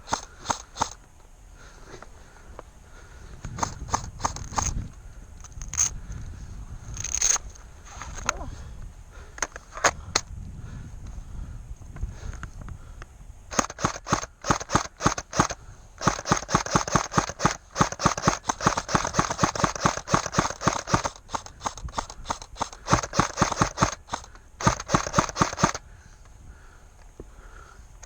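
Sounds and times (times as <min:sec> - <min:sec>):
airsoft gun rapid shots: 0:00.0 - 0:01.0, 0:03.5 - 0:04.8, 0:13.5 - 0:25.8.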